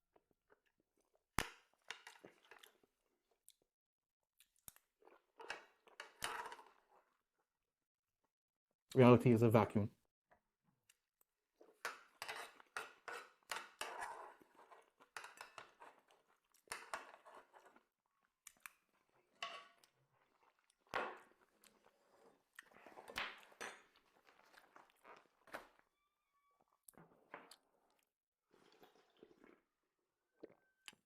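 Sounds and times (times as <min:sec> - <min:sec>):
person chewing food: 0:00.2 - 0:03.7, 0:10.9 - 0:25.5, 0:26.9 - 0:31.0.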